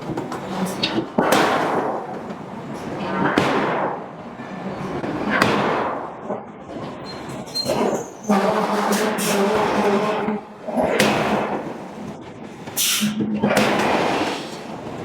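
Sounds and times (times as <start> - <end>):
forging hammer striking steel: 0.8 - 2.2, 3.2 - 4.1, 5.3 - 6.4, 7.7 - 11.9, 12.8 - 14.8.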